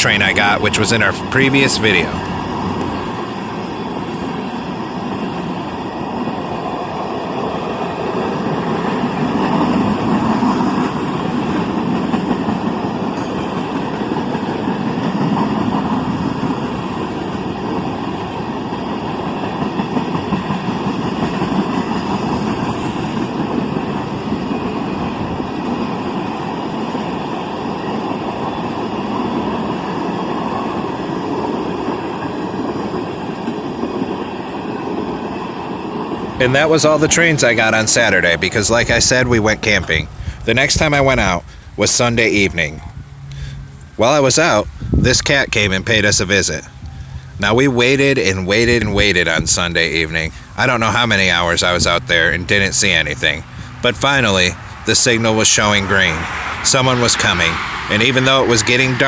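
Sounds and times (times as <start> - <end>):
freight train wheels on rails: 0.0 - 59.0.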